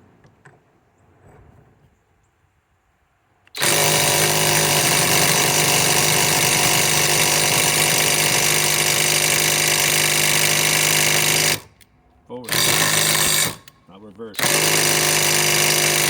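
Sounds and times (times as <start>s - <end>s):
impact wrench hammering: 3.6s - 11.8s, 12.5s - 16.0s.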